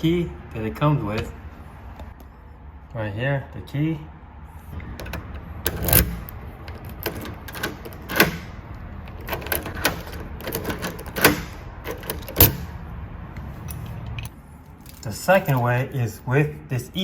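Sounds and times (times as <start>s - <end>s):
lock clunks: 4.8s - 12.8s
key clicking in lock cylinder: 4.9s - 12.7s.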